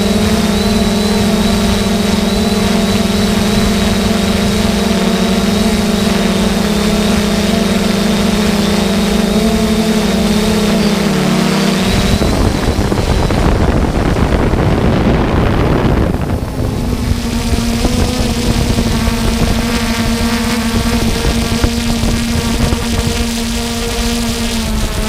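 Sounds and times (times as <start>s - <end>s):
motor hum with high whine: 0.0s - 25.0s.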